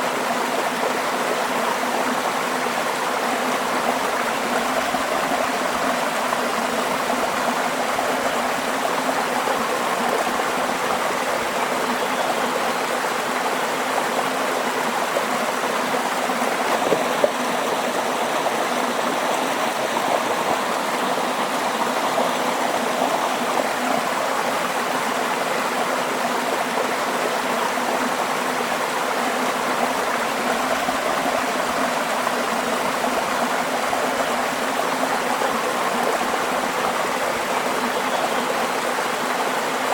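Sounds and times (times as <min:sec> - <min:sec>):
stream flowing: 0:00.0 - 0:39.9.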